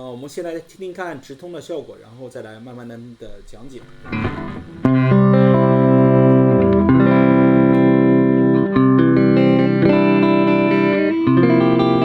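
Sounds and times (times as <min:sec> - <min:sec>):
electric guitar chords: 0:03.6 - 0:12.0.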